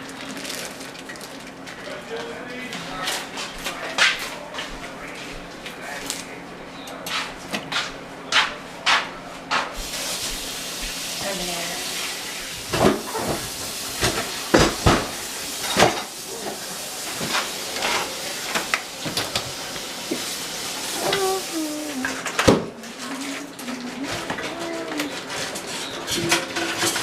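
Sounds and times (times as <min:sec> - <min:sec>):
cooking hiss: 0:09.8 - 0:26.0
pots and utensils clanking: 0:11.9 - 0:27.0.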